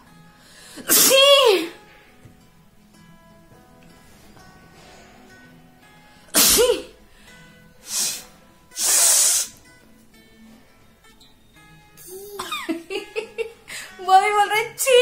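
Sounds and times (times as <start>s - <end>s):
woman sneezing: 0.8s - 1.8s, 6.3s - 7.0s, 8.8s - 9.6s.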